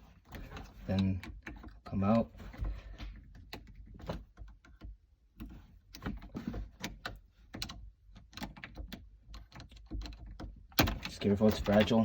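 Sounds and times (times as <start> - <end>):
plastic trim clicking and knocking: 2.6 - 12.0.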